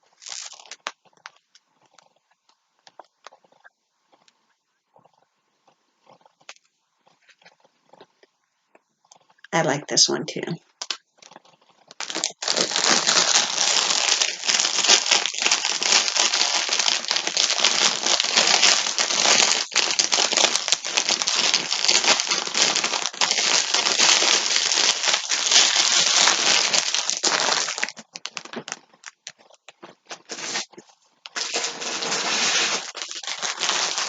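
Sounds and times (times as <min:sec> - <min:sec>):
packaging crinkling: 0:00.0 - 0:01.6, 0:10.8 - 0:34.0.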